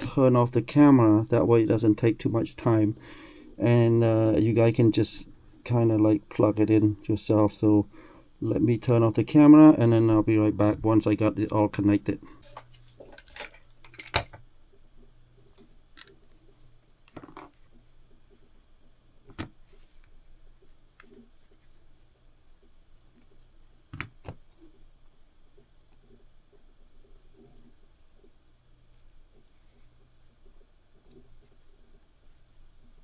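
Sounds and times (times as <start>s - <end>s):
faint steady hum: 0.0s - 33.0s
handling clicks and taps: 15.4s - 17.8s, 19.2s - 20.2s, 23.9s - 24.8s.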